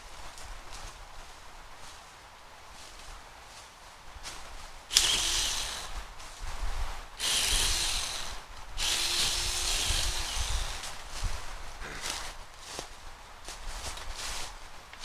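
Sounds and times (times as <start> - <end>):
small chainsaw cutting wood: 4.9 - 6.1, 7.2 - 11.0.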